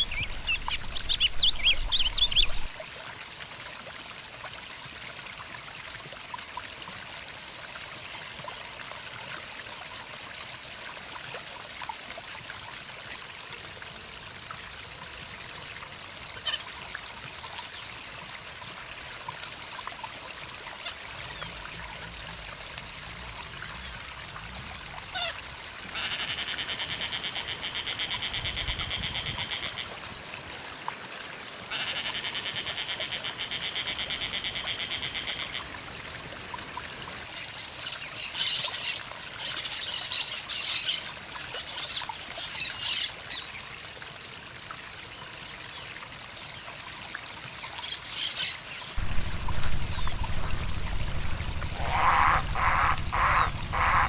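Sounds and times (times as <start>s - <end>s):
bird trills: 0.0s - 2.8s, 49.0s - 54.0s
high-pitched background hum: 0.0s - 2.8s, 49.0s - 54.0s
short harsh bird calls: 0.0s - 2.8s, 49.0s - 54.0s.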